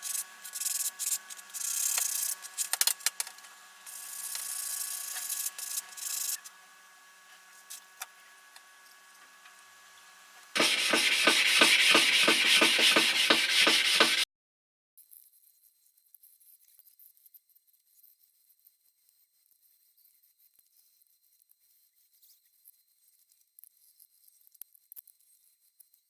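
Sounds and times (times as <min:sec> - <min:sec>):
hand sanding strokes: 0:10.6 - 0:14.2.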